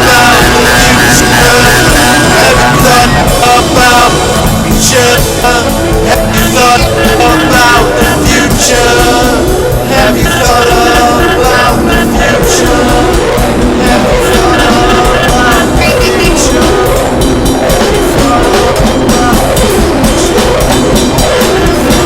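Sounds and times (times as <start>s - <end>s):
drums: 0.0s - 22.0s
loud rock music: 0.0s - 22.0s
pitch-bending lead line: 0.0s - 22.0s.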